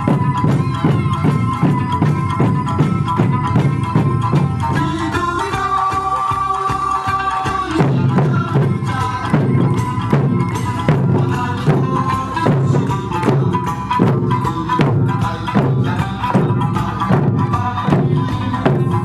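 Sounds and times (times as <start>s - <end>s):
drums struck in steady beat: 0.0s - 19.0s
sustained folk melody: 0.0s - 19.0s.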